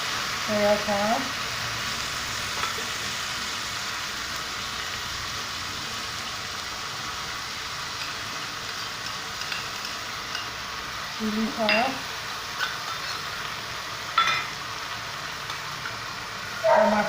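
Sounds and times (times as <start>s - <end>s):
vegetables sizzling in hot oil: 0.0s - 17.0s.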